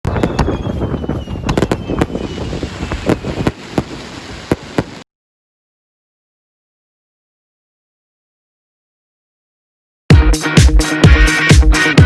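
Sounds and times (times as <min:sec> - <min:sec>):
faint falling whistle: 0:00.1 - 0:03.3
firework bangs: 0:00.1 - 0:05.0.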